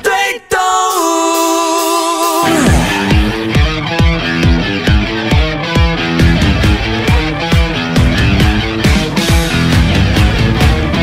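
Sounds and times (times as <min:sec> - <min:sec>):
person singing long note: 0:00.8 - 0:03.5
pop-rock band with drums and guitar: 0:01.4 - 0:11.0.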